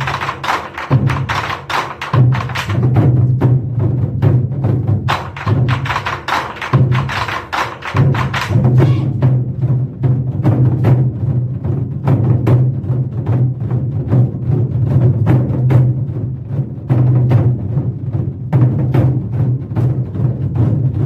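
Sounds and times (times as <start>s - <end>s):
deep drum boom: 2.1s - 6.1s.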